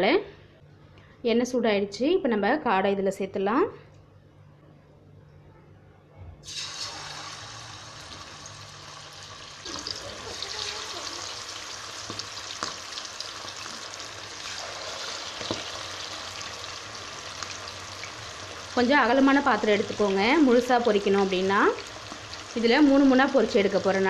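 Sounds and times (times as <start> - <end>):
quail deep-frying in hot oil: 6.4 - 24.0.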